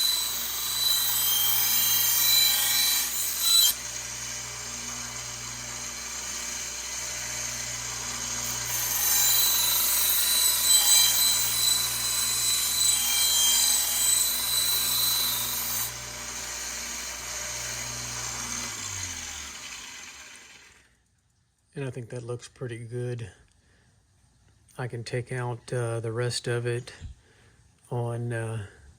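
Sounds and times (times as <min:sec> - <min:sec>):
grinder motor hum: 0:00.0 - 0:20.8
knife blade grinding: 0:08.5 - 0:15.9.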